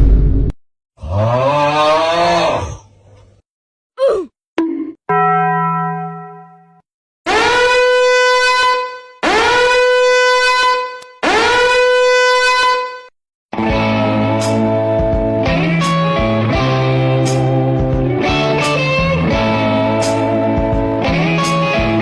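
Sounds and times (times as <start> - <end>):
swooping horn blasts: 7.3 - 13.1.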